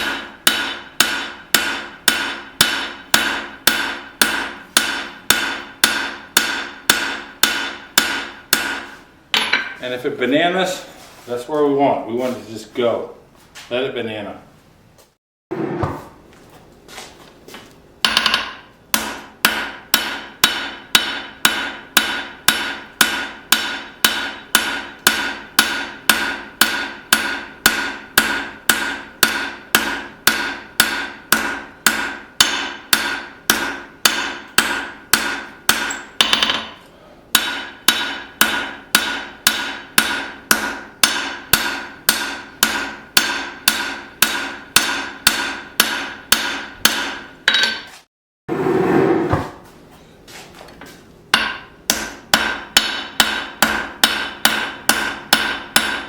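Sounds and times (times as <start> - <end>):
hammer ringing on anvil: 0.0 - 9.8, 18.0 - 47.9, 51.3 - 56.0.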